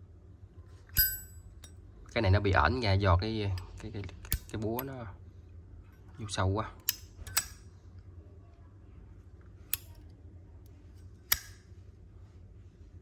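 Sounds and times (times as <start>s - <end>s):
lighter lid metal clicks: 11.3s - 11.6s.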